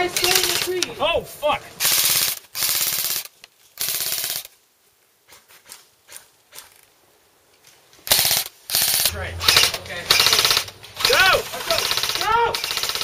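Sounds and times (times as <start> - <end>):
airsoft guns full-auto fire: 1.8 - 4.5, 8.1 - 13.0.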